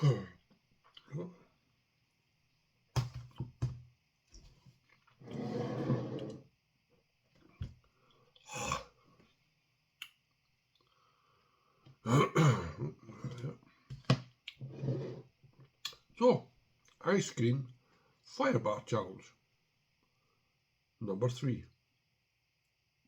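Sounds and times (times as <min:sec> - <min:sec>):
man clearing throat and grunting: 0:00.0 - 0:00.4, 0:08.5 - 0:08.9, 0:12.0 - 0:13.6.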